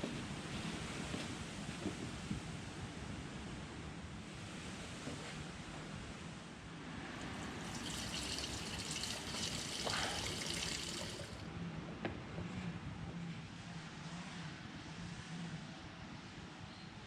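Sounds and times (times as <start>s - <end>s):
fuel pouring into tank: 7.1s - 11.4s.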